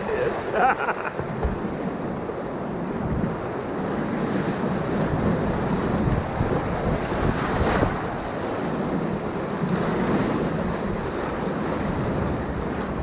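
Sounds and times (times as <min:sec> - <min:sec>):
rushing whitewater roar: 0:00.0 - 0:08.4
wind buffeting microphone: 0:00.0 - 0:13.0.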